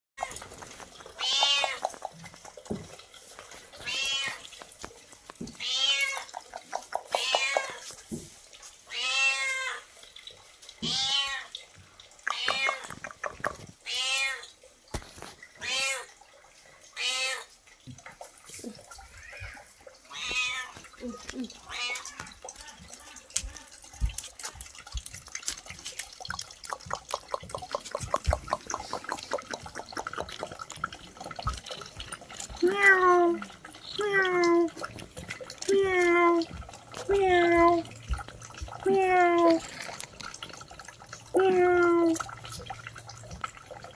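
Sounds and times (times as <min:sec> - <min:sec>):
cat meowing: 0:19.2 - 0:20.8
cat eating with wet mouth clicks: 0:21.7 - 0:33.7.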